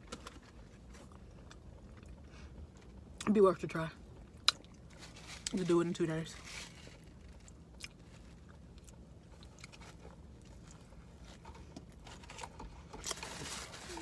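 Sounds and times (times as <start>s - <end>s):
person chewing food: 7.2s - 13.2s.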